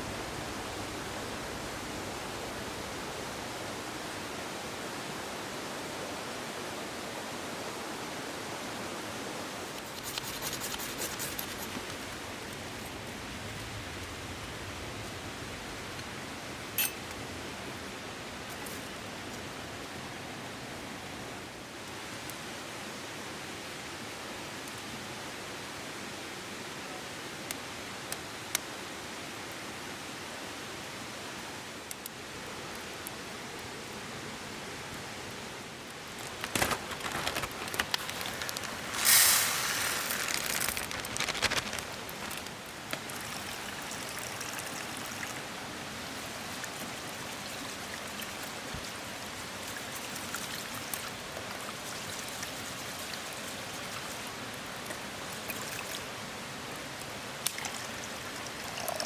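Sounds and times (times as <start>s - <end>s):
river rushing: 38.4s - 59.0s.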